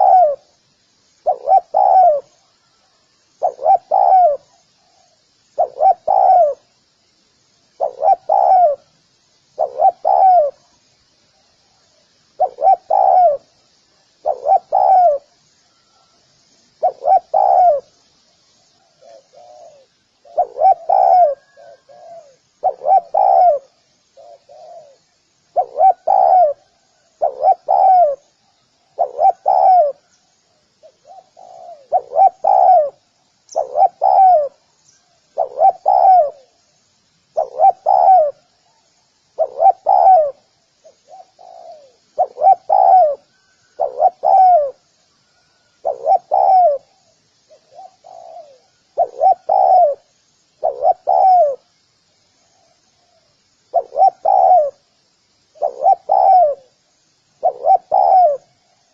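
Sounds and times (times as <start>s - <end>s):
dove cooing: 0.0s - 0.5s, 1.2s - 6.7s, 7.8s - 8.9s, 9.6s - 10.8s, 12.4s - 13.5s, 14.2s - 16.1s, 16.8s - 18.0s, 18.8s - 28.3s, 28.9s - 30.2s, 30.8s - 34.7s, 35.3s - 36.6s, 37.4s - 38.8s, 39.4s - 51.7s, 53.0s - 54.8s, 55.5s - 56.8s, 57.4s - 58.6s.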